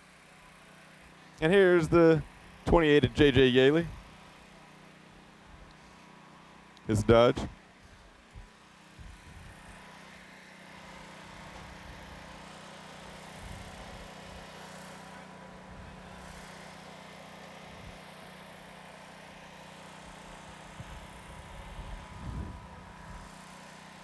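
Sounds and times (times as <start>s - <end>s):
low mechanical hum of machinery: 0.0s - 24.0s.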